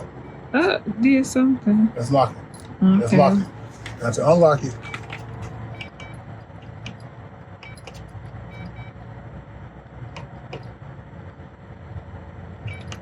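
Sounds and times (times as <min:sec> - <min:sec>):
steady low rumble: 0:00.0 - 0:13.0
keypad electronic beeps: 0:04.8 - 0:06.2, 0:07.6 - 0:08.9, 0:12.6 - 0:13.0.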